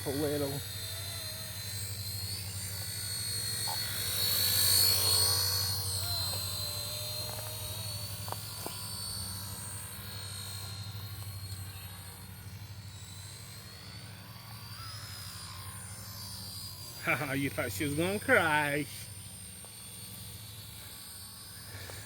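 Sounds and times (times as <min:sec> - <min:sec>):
model helicopter whining: 0:00.0 - 0:22.0.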